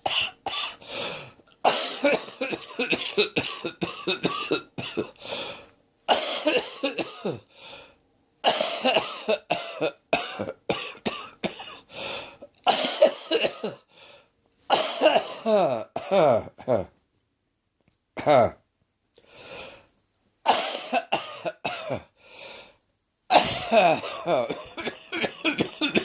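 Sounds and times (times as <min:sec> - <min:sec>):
person coughing harshly: 0:00.0 - 0:00.9, 0:01.6 - 0:05.2, 0:06.1 - 0:07.5, 0:08.4 - 0:13.9, 0:14.7 - 0:16.9, 0:18.2 - 0:18.6, 0:20.5 - 0:22.1, 0:23.3 - 0:26.0.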